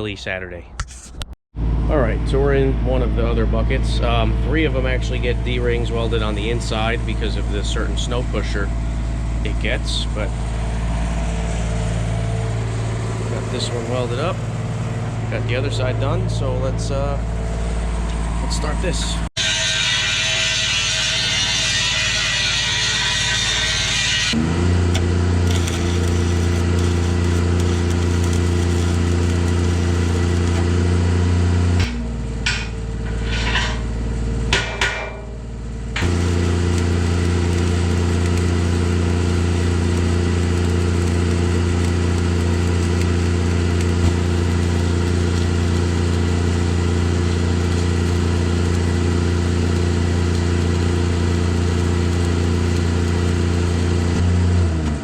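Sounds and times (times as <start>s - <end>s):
welding machine humming: 5.2s - 54.8s
welding arc crackling: 18.9s - 32.0s, 35.7s - 54.4s.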